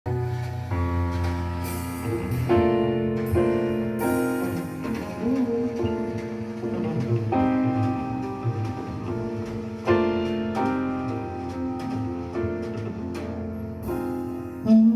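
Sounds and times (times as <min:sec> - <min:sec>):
piano chords over loudspeakers: 0:00.1 - 0:14.9.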